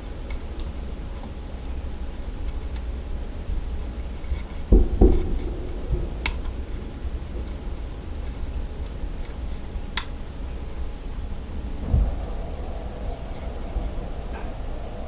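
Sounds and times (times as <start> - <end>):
dull thumps: 4.6 - 9.7.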